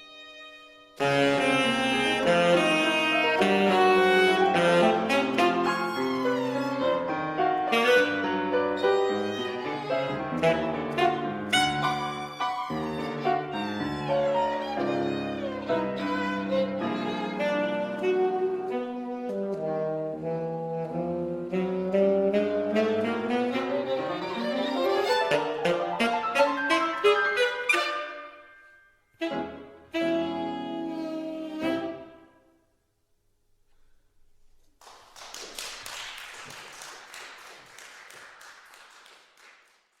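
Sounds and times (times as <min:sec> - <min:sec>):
violin: 0:00.0 - 0:19.6, 0:22.8 - 0:28.3, 0:29.2 - 0:32.2
piano: 0:00.0 - 0:32.7
saxophone playing: 0:00.2 - 0:32.5
audience applauding: 0:34.8 - 0:40.0.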